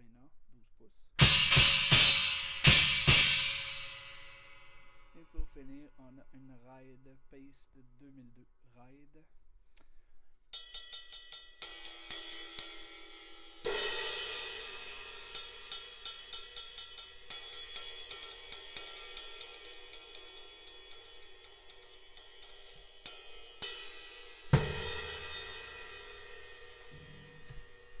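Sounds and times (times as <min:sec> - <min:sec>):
accented cymbal hits: 0:01.2 - 0:05.5, 0:10.6 - 0:28.0
ride cymbal struck with stick: 0:01.2 - 0:05.5, 0:10.6 - 0:28.0.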